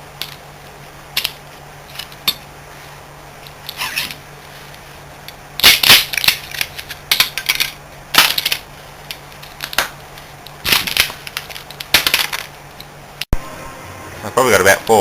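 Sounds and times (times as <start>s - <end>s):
copper pieces clinking: 5.3s - 12.9s.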